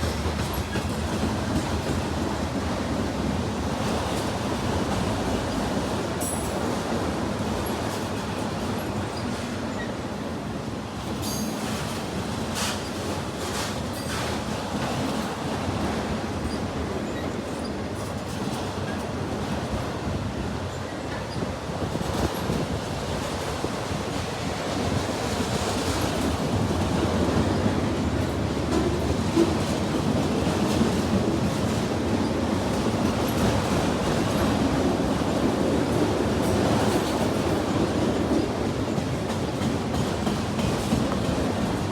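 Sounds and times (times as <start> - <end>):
freight train wheels rumbling on rails: 0.0 - 41.9.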